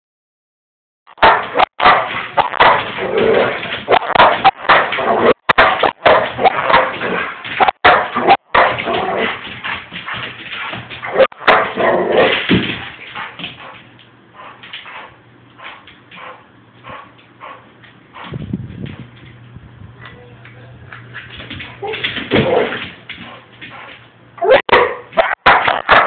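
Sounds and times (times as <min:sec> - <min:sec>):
dog whining and barking: 0:24.4 - 0:26.0.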